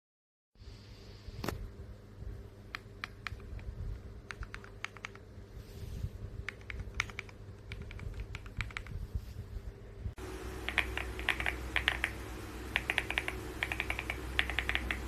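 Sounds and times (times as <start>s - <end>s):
faint low hum: 0.6s - 15.0s
mechanical keyboard clicks: 4.3s - 5.2s, 6.5s - 8.9s, 10.6s - 15.0s.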